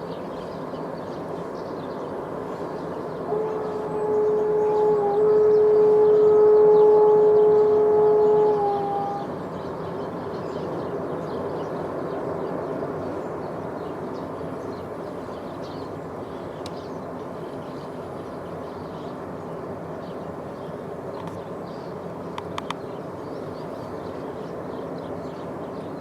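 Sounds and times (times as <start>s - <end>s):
train horn chord: 3.3s - 9.3s.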